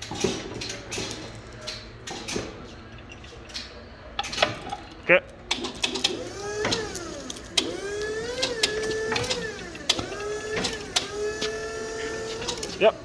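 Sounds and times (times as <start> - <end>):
small electric motor whining: 6.1 - 13.0.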